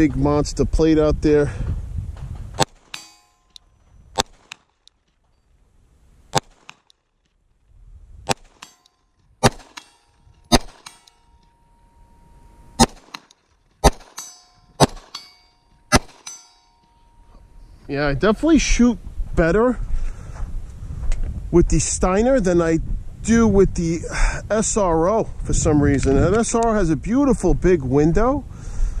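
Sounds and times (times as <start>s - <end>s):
steel plate ringing: 2.6s - 3.9s, 8.6s - 18.3s
pistol shots: 2.6s - 4.8s, 6.3s - 6.9s, 8.3s - 8.8s, 9.4s - 11.4s, 12.8s - 16.5s.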